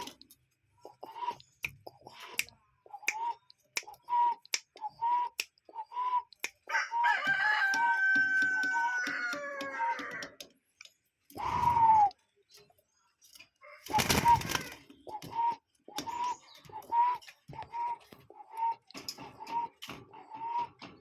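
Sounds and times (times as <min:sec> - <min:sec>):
noisy bird call: 0:00.8 - 0:10.5, 0:11.3 - 0:12.4, 0:13.6 - 0:21.0
bird whistled notes: 0:11.4 - 0:12.2, 0:15.2 - 0:19.8.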